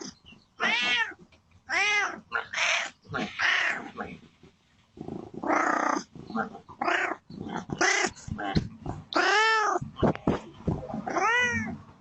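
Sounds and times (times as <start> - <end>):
cat meowing: 0.6 - 3.8, 11.0 - 11.8.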